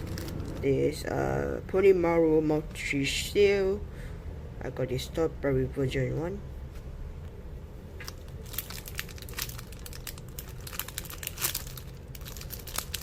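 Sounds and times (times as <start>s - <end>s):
plastic packaging crackling: 0.0s - 1.0s, 8.0s - 13.0s.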